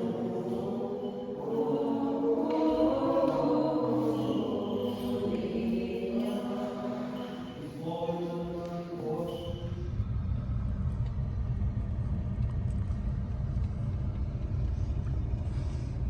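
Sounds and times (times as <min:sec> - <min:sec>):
choir singing a slow chant: 0:00.0 - 0:10.0.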